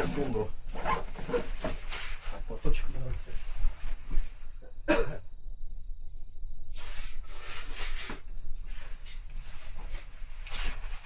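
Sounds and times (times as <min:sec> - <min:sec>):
clothing rustling: 0:00.0 - 0:04.5, 0:08.6 - 0:11.0
steady low rumble: 0:03.7 - 0:07.4.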